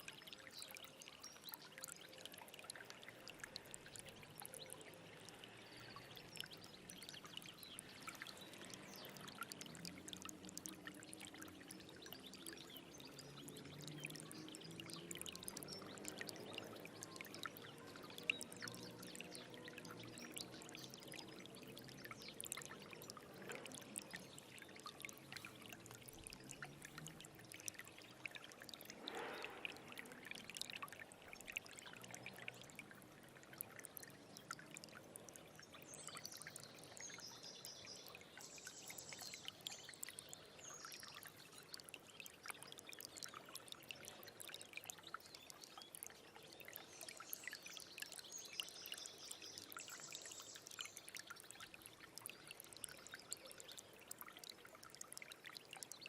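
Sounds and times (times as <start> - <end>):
stream babbling over stones: 0.0 - 56.0.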